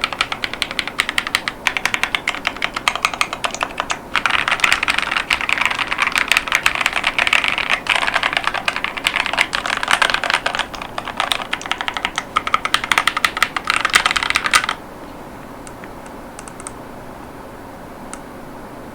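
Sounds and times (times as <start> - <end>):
mechanical keyboard key clacks: 0.0 - 14.8.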